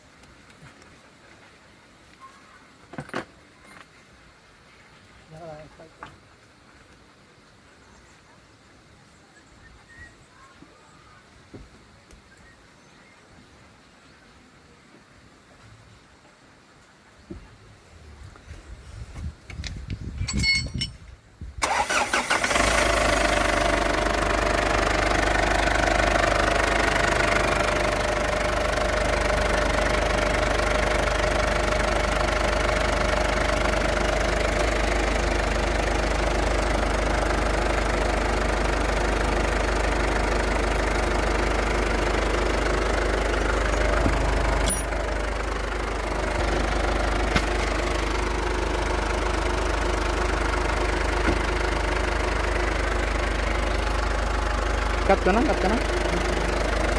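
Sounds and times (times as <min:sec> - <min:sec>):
engine starting and idling: 0:21.6 - 0:56.9.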